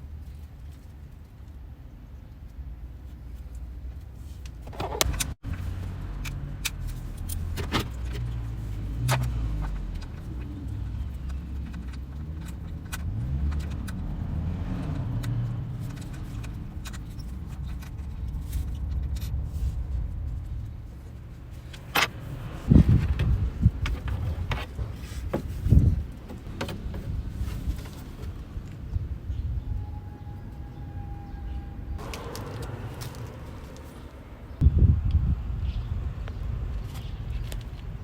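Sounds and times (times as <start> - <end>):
sharp engine clicks: 9.0 - 19.4.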